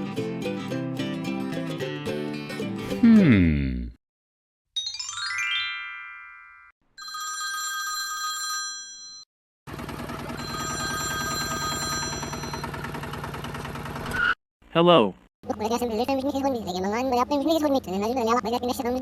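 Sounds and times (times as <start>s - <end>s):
steady electronic ringing tone: 10.1s - 12.9s.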